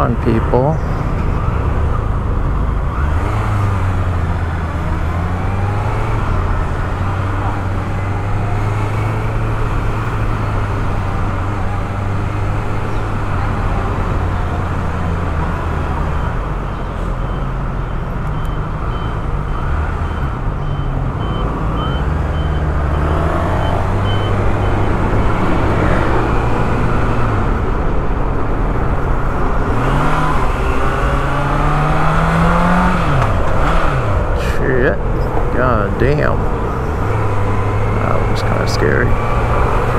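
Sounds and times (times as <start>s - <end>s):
road and wind noise: 0.0s - 39.9s
motorcycle engine revving: 29.6s - 39.9s.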